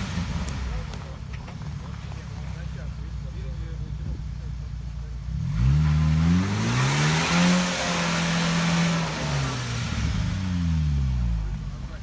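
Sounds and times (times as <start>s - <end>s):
engine revving hard: 0.0s - 1.0s, 5.3s - 11.6s.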